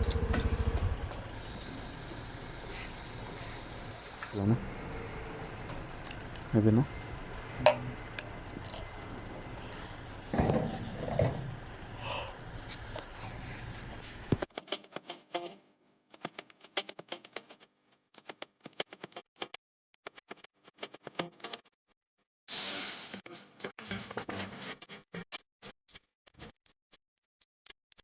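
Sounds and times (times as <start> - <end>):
open-air background hiss: 0.0 - 10.8.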